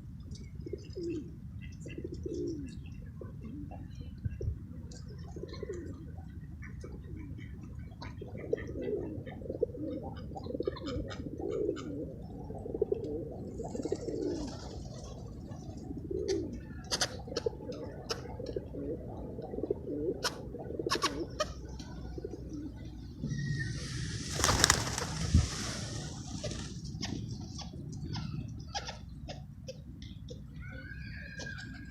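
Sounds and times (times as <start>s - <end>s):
pigeons cooing: 0.6s - 29.4s
pigeon wings flapping: 24.2s - 26.8s.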